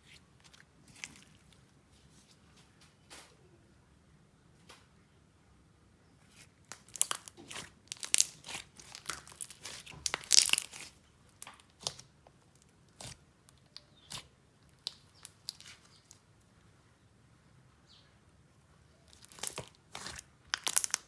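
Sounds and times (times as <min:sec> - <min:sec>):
slime squished by hand crackling: 0:06.3 - 0:16.2, 0:19.1 - 0:21.0.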